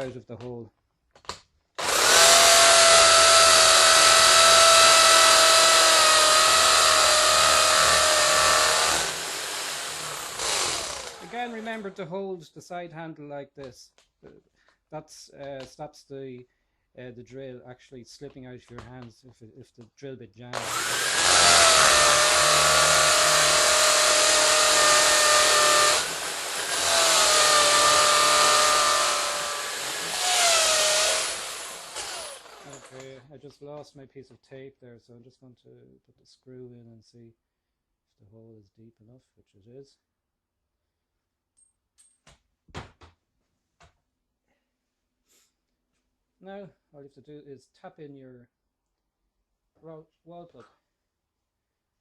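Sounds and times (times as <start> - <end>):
electric drill drilling into wall: 1.8 - 11.8, 20.6 - 33.2.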